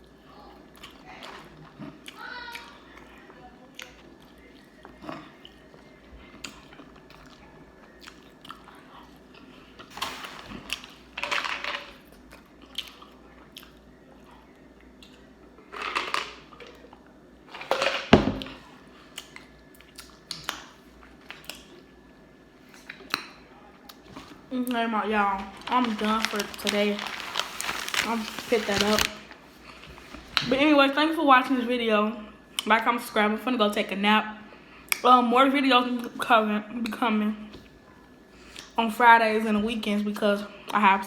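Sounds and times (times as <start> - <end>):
person chewing food: 0.0 - 9.9, 12.1 - 15.5, 19.0 - 22.0.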